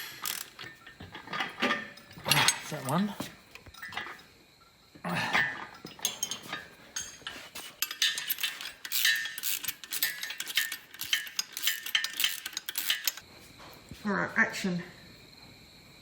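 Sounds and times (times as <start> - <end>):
metallic clicks of hand tools: 5.8 - 13.2.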